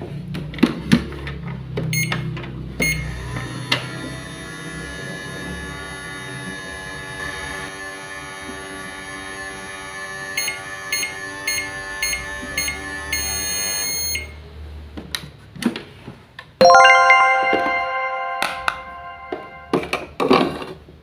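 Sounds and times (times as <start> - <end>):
loud bell-like ding: 16.6 - 19.8.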